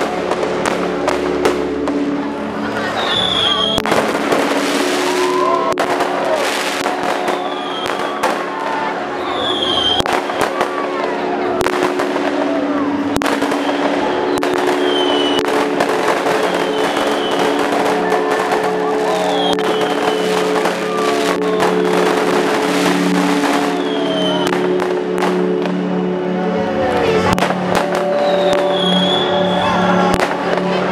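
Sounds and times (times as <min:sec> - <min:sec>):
droning music chord: 0:00.0 - 0:03.0, 0:10.8 - 0:28.1
fireworks bangs and crackles: 0:00.0 - 0:26.1, 0:27.0 - 0:30.9
falling whistles: 0:03.0 - 0:03.9, 0:07.1 - 0:08.3, 0:09.2 - 0:10.0, 0:13.5 - 0:15.4, 0:16.3 - 0:17.6, 0:19.2 - 0:20.4, 0:23.5 - 0:24.5, 0:28.1 - 0:29.7.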